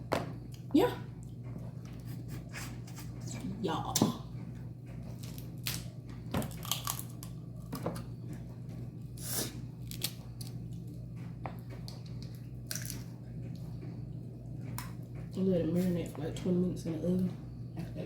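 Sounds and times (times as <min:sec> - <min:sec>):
crab shells cracking: 0:05.2 - 0:08.0, 0:09.8 - 0:10.6, 0:11.9 - 0:13.1.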